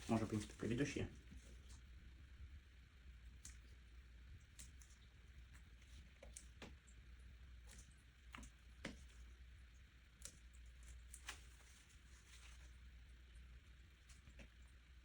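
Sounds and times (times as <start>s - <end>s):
low room hum: 0.0s - 15.0s
faint clicks and taps: 4.4s - 12.7s, 14.0s - 14.8s.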